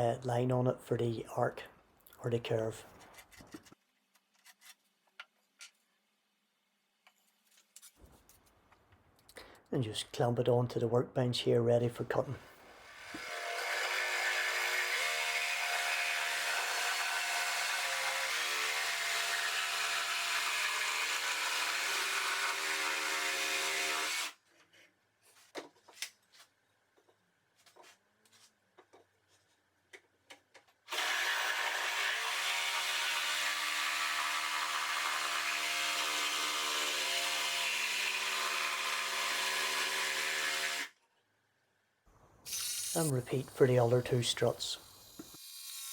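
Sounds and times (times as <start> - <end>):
electric jigsaw cutting wood: 12.9 - 24.4, 30.9 - 40.9.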